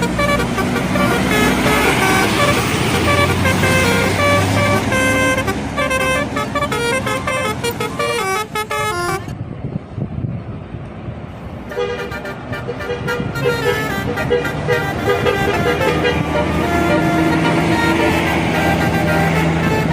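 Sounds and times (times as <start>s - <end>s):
bus horn playing quick tune: 0.0s - 9.3s, 11.7s - 19.9s
bus engine and road noise: 0.0s - 19.9s.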